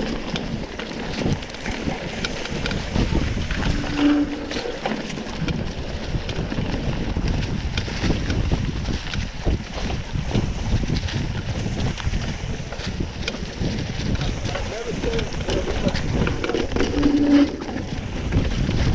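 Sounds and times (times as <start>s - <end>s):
bike rattles and knocks: 0.0s - 18.9s
wind rushing over microphone: 0.0s - 18.9s
short low tone: 3.6s - 4.7s.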